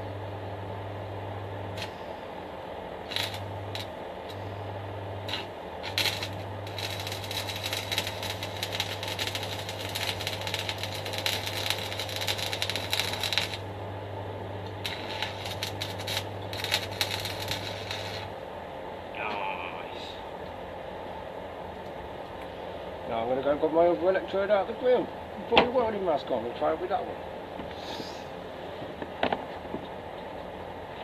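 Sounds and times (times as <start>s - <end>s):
welding machine hum: 0.0s - 18.8s
welding arc crackling: 1.7s - 2.0s, 3.0s - 4.5s, 5.1s - 13.8s, 14.6s - 18.5s.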